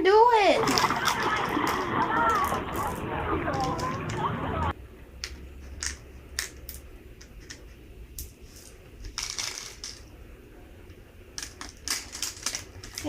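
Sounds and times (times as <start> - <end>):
plastic toy pieces clicking: 0.7 - 4.2, 5.2 - 7.6, 9.0 - 10.1, 11.4 - 13.0.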